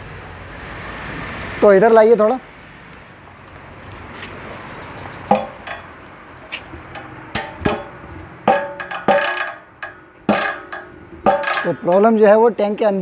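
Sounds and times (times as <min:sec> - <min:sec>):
metal fuel tank clanking: 0:05.3 - 0:06.0, 0:06.7 - 0:12.3.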